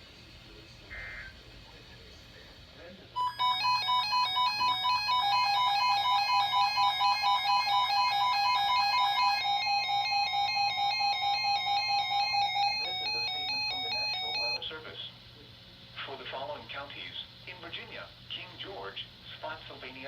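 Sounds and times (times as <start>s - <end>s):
rapid electronic beeps: 3.2s - 14.6s.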